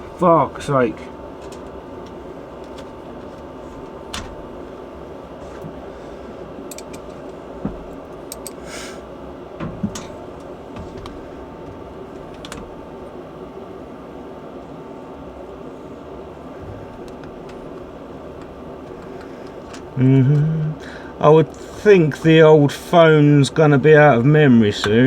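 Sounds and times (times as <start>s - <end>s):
background hum: 0.0s - 25.0s
faint whine: 0.0s - 25.0s
hands handling cables clicking: 1.4s - 4.4s, 6.7s - 8.6s, 9.8s - 12.8s, 16.9s - 20.0s.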